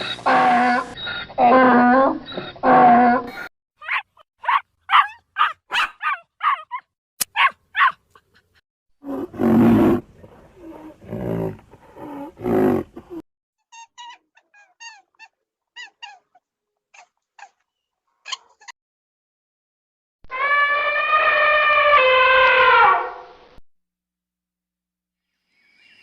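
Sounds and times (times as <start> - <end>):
animal yipping: 3.8 - 8.2, 13.7 - 17.6.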